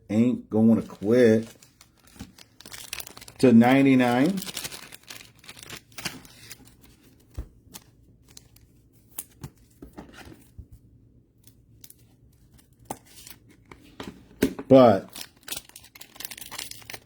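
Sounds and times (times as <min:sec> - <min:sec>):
cards rustling: 0:00.7 - 0:10.5, 0:14.8 - 0:17.0.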